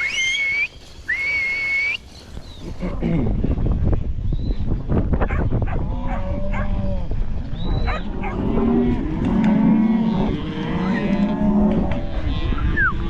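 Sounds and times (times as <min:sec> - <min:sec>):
cattle mooing: 0:05.8 - 0:07.2, 0:07.8 - 0:13.0.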